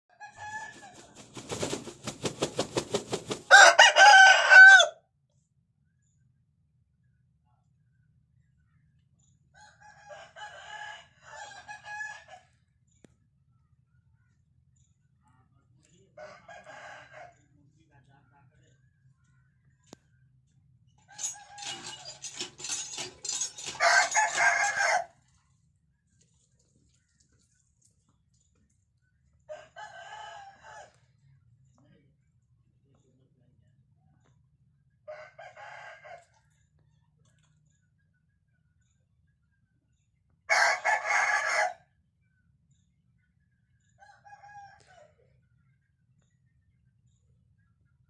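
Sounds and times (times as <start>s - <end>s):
rooster crowing: 3.5s - 5.0s, 9.6s - 12.4s, 23.4s - 25.1s, 29.5s - 31.0s, 40.5s - 41.8s.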